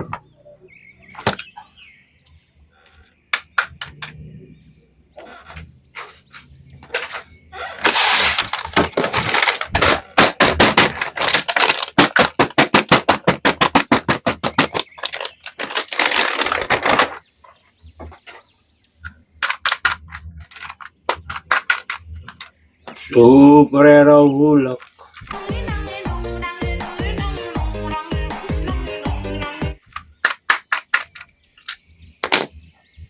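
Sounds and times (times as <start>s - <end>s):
handling rustling: 7.0s - 17.2s
sharp clicks: 19.0s - 22.5s.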